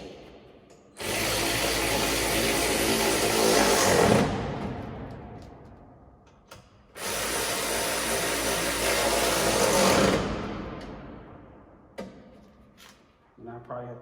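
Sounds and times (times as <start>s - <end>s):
power tool running: 1.0s - 4.5s, 7.0s - 10.7s.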